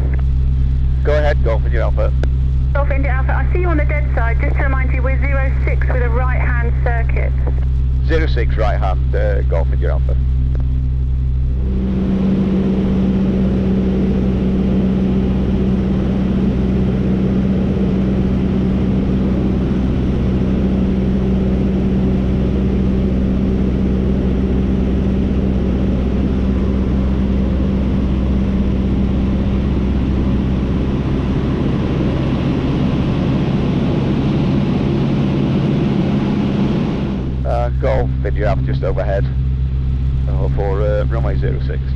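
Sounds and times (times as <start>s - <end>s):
aircraft engine and propeller droning: 0.0s - 41.9s
cockpit hiss: 7.5s - 10.0s.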